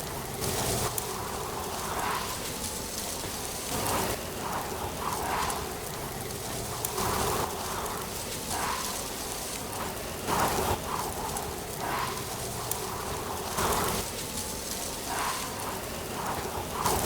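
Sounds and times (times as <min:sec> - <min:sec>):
faint ticks: 0:00.0 - 0:17.0
wind rustling dry leaves: 0:00.0 - 0:17.0.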